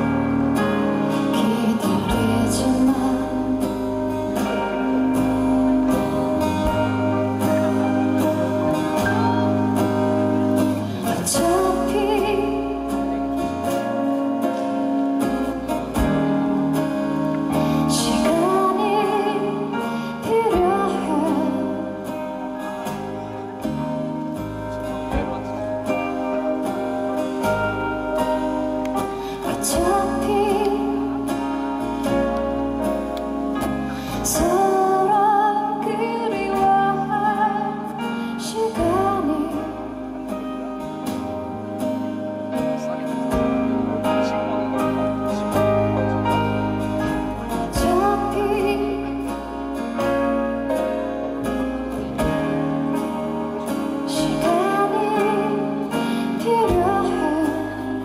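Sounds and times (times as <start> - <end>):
woman singing: 0.0 - 16.1, 16.8 - 23.3, 25.8 - 42.2, 45.6 - 51.0, 53.0 - 58.0
guitar accompaniment: 0.0 - 58.0.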